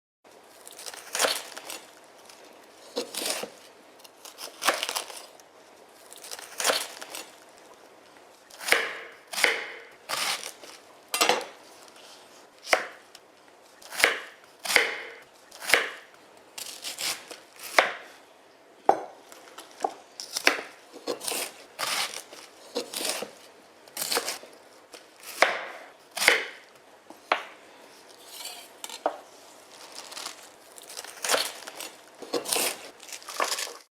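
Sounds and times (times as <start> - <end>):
knife slicing cabbage: 0.6 - 2.0, 2.8 - 5.3, 6.1 - 7.4, 8.5 - 10.8, 13.8 - 18.1, 20.2 - 24.5, 25.1 - 26.6, 28.1 - 29.1, 29.7 - 33.9.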